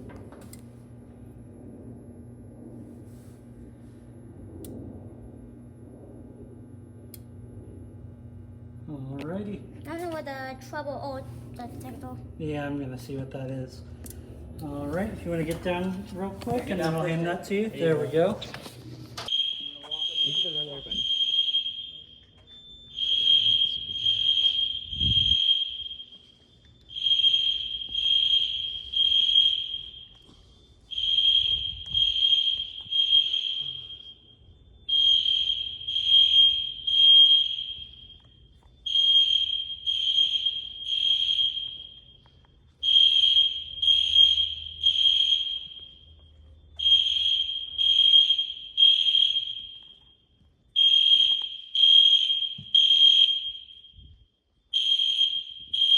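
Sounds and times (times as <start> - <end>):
fire alarm beeping: 12.9 - 55.9.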